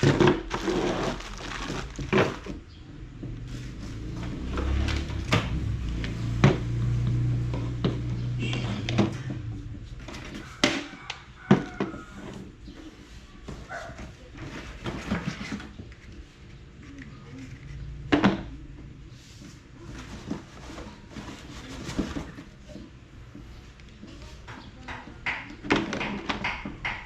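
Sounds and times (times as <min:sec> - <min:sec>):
objects being handled: 0:00.0 - 0:02.7.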